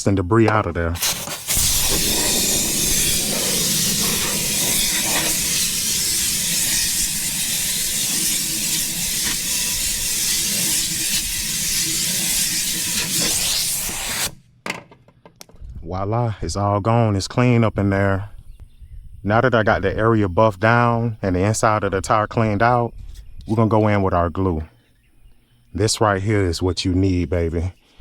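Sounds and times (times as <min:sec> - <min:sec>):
compressed air blow gun hissing: 0:01.0 - 0:14.4.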